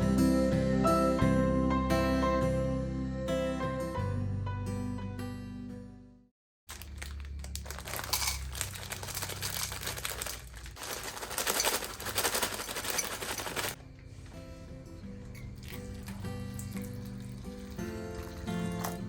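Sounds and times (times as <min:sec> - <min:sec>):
background music: 0:00.0 - 0:06.2, 0:13.5 - 0:19.0
dense crinkling crackling noise: 0:06.7 - 0:13.8.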